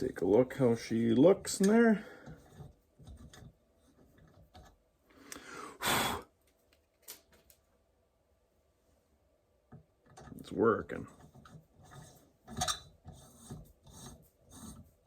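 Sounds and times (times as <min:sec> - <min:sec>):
faint clicks and rubs: 0:01.4 - 0:04.8, 0:09.8 - 0:15.0
person exhaling loudly: 0:05.3 - 0:06.3.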